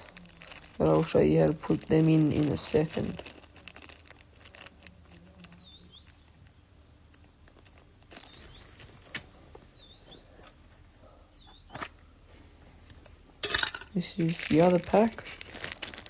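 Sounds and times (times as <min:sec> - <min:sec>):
small bird chirping: 0:05.4 - 0:06.7, 0:08.1 - 0:09.0, 0:09.6 - 0:10.5, 0:11.3 - 0:11.9.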